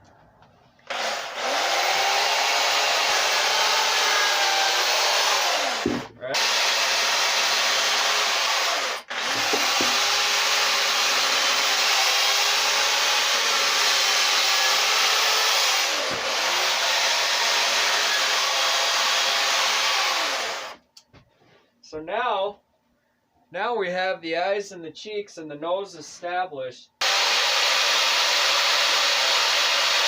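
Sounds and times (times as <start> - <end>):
chainsaw carving wood: 0.9 - 20.8, 27.0 - 30.0.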